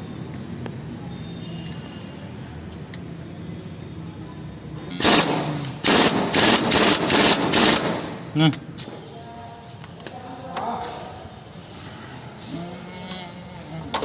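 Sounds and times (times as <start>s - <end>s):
power tool bursts: 5.0s - 8.3s.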